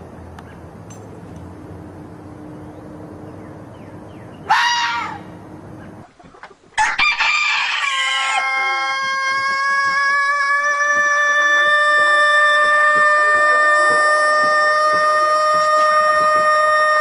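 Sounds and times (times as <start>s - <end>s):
rooster crowing: 4.5s - 5.3s, 6.8s - 17.0s.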